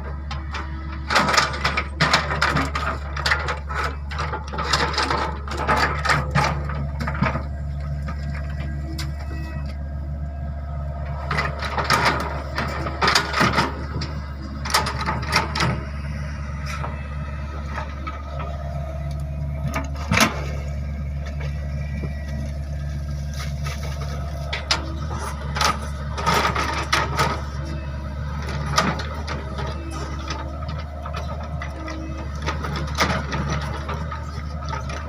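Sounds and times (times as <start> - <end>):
excavator engine running: 0.0 - 35.0
metallic clanking and knocks: 11.1 - 22.3, 23.5 - 35.0.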